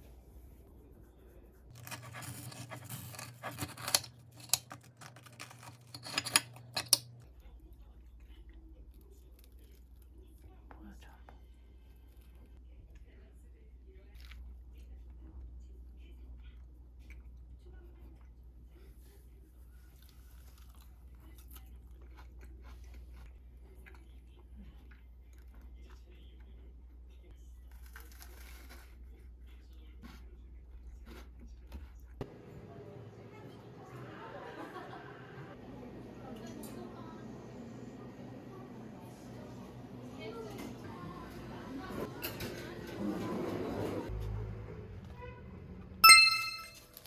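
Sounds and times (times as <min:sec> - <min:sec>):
packaging rustling and scraping: 0:01.7 - 0:06.3
person chewing food: 0:20.0 - 0:26.5.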